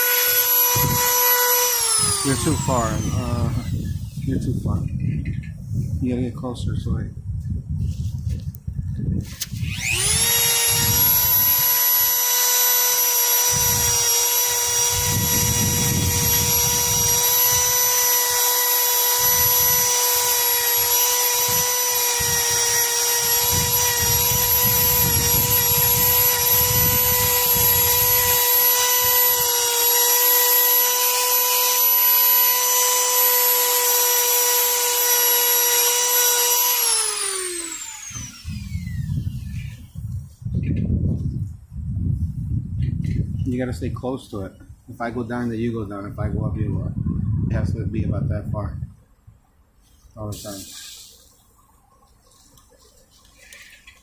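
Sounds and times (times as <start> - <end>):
electric rotary tool whining: 0.0 - 4.4, 9.3 - 40.0
scraping rust off metal: 52.1 - 54.0.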